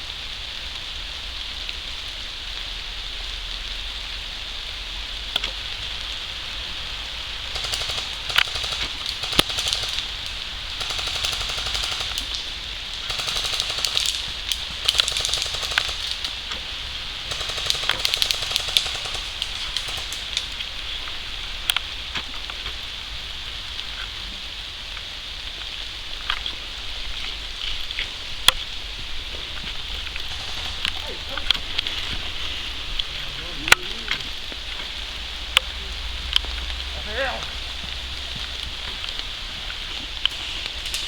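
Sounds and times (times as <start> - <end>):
airsoft rifle bursts: 7.4 - 20.7, 30.2 - 31.4, 40.3 - 41.0.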